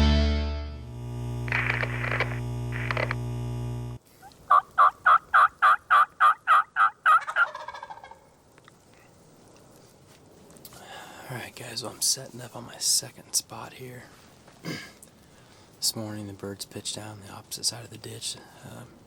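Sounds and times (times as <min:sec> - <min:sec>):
turkey yelps: 0:04.2 - 0:08.3.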